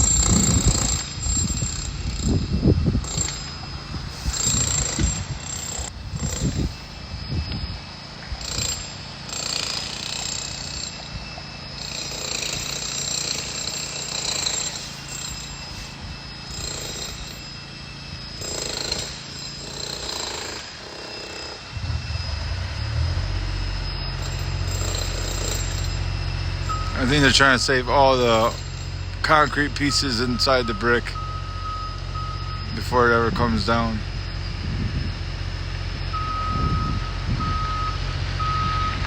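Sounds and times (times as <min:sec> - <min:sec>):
power tools chipping concrete: 0:00.0 - 0:06.8, 0:08.4 - 0:11.1, 0:11.7 - 0:21.8, 0:22.9 - 0:31.4
low engine hum: 0:21.7 - 0:39.0.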